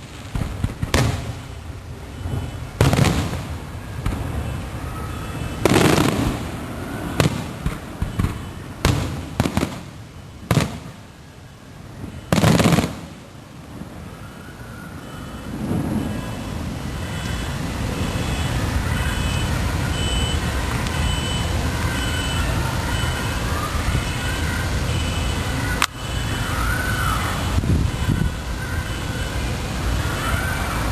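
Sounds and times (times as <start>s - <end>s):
fireworks exploding: 0.0s - 11.1s, 12.0s - 14.1s, 14.9s - 22.3s
mixed background din: 0.0s - 30.9s.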